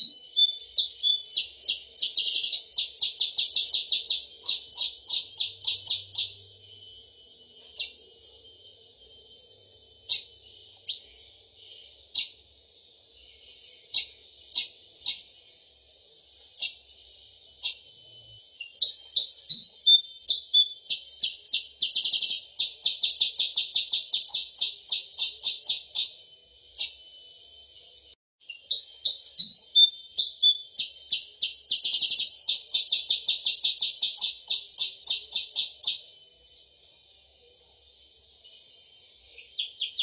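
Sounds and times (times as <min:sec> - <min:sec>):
bird chirps and fast trill: 0:00.0 - 0:07.0, 0:07.7 - 0:08.1, 0:12.1 - 0:12.5, 0:13.2 - 0:15.7, 0:16.6 - 0:27.2, 0:28.4 - 0:36.2, 0:39.2 - 0:40.0.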